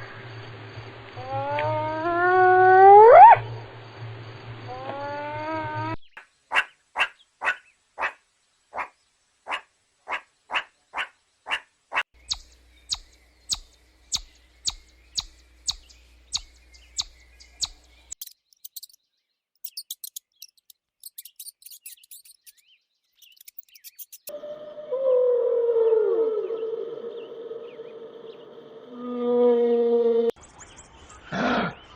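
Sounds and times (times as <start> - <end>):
bird chirping: 5.9 - 24.7, 25.8 - 29.0
high-pitched bird twittering: 12.2 - 19.0, 19.6 - 24.3.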